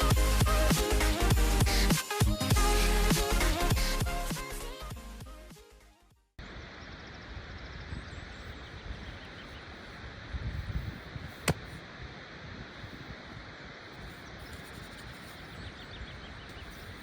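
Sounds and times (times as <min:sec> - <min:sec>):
electronic background music: 0:00.0 - 0:06.0.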